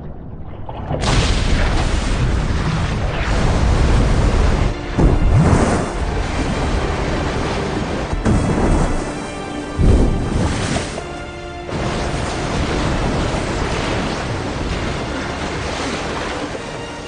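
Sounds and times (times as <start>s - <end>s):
heavy low boom: 1.0s - 6.6s
film score music: 1.0s - 17.0s
surging water rushing: 1.0s - 17.0s.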